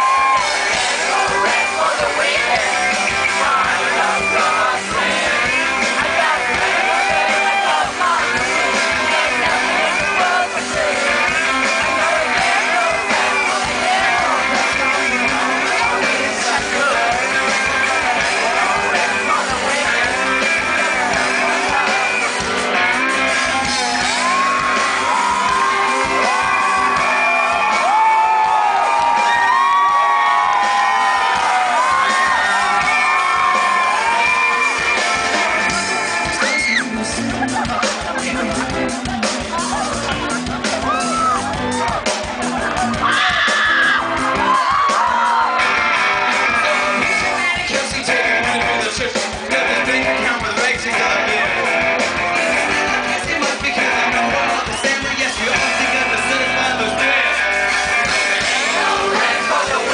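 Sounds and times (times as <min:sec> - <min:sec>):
man singing lead vocal: 0:00.0 - 0:28.0, 0:42.9 - 0:59.9
audience shouting: 0:00.0 - 0:59.9
rock band playing live: 0:00.0 - 0:59.9.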